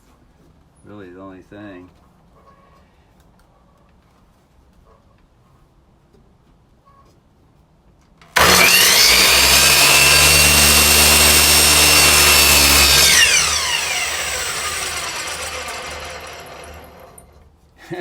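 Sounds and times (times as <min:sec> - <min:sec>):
miter saw motor whining: 0:08.4 - 0:17.3.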